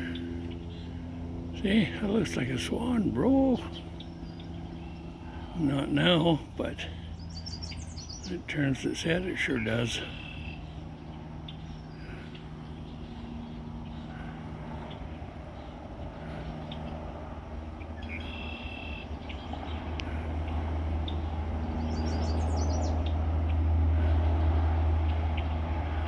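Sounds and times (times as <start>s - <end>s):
passing vehicle rumble: 0.0s - 26.0s
small birds chirping: 0.0s - 26.0s
high bird trill: 16.5s - 19.9s, 21.0s - 23.2s.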